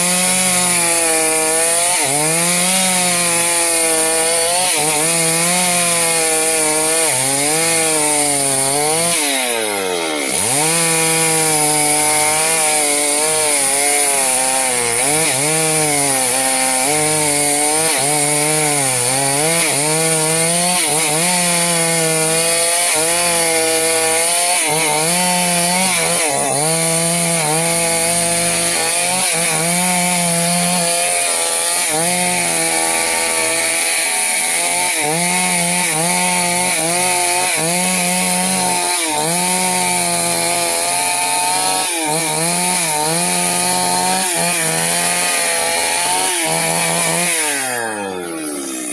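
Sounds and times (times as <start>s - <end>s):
chainsaw cutting wood: 0.0s - 48.9s.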